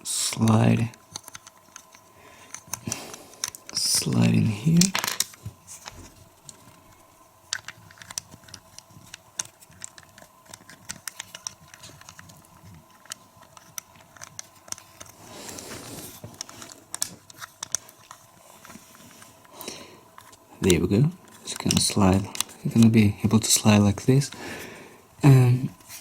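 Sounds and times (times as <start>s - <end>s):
plastic bricks clicking together: 4.7s - 5.4s, 7.5s - 15.2s.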